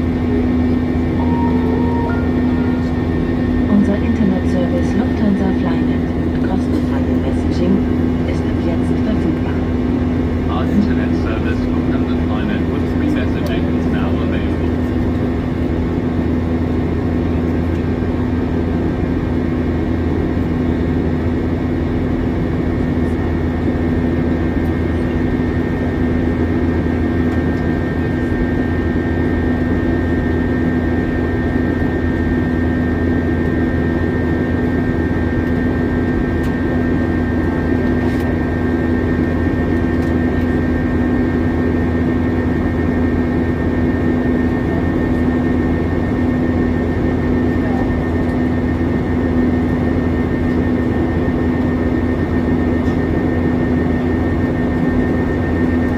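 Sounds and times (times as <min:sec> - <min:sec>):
high steady whine: 0:00.0 - 0:15.3
airplane engine drone: 0:00.0 - 0:55.9.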